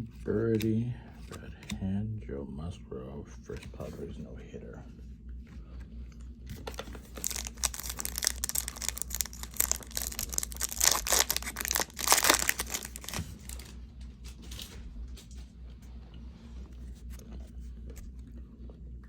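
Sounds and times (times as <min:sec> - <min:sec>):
wrapper tearing and crinkling: 0:06.7 - 0:13.8.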